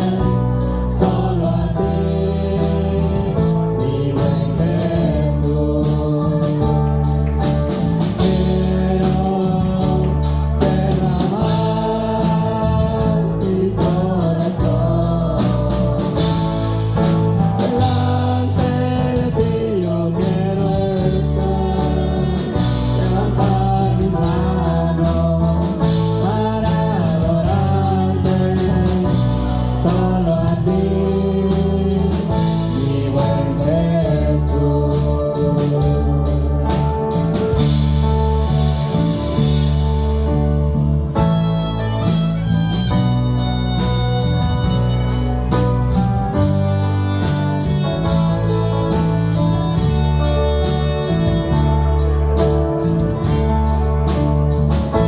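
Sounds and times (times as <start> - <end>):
people singing: 0.0 - 37.8
bass: 0.0 - 55.0
church band worship music: 0.0 - 55.0
steady drum beat: 0.0 - 55.0.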